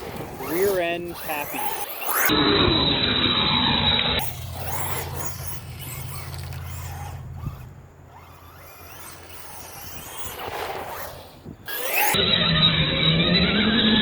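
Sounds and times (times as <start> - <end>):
electric motor whine: 0.0 - 14.0
tyres on dirt: 0.0 - 14.0.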